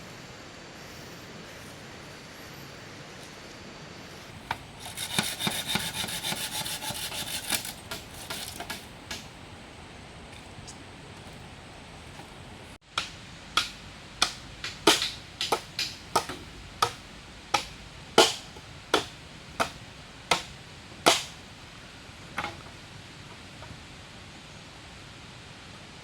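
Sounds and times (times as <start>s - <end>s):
rain hiss: 0.0s - 26.0s
hand tool striking wood: 4.3s - 9.4s, 12.1s - 21.5s, 22.2s - 22.8s.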